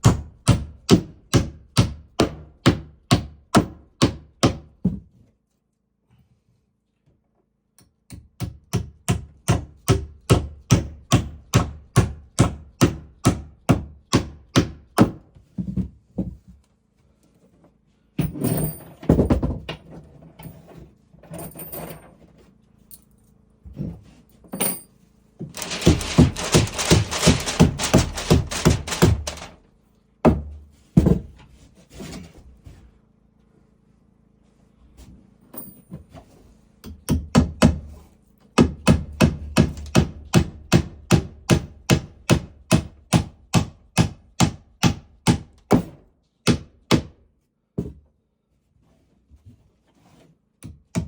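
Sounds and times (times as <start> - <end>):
hammer driving nail into wood: 0.0 - 4.7, 8.1 - 15.2, 25.6 - 29.6, 38.6 - 47.1.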